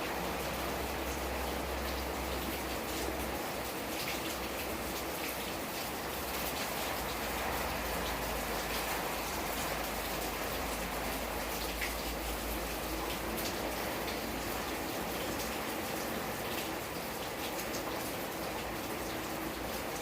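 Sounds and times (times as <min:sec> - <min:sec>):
rain falling: 0:00.0 - 0:20.0.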